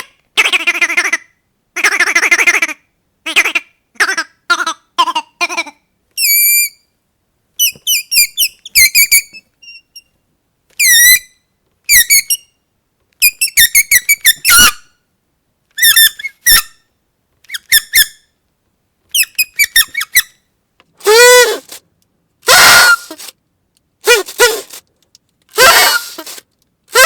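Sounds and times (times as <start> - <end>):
squeaky dog toy squeaks: 4.6 - 6.8, 7.6 - 10.1, 10.8 - 12.5, 13.2 - 15.0, 15.8 - 16.8, 17.5 - 18.2, 19.1 - 20.4, 21.0 - 21.8, 22.5 - 23.3, 24.0 - 24.8, 25.5 - 27.0.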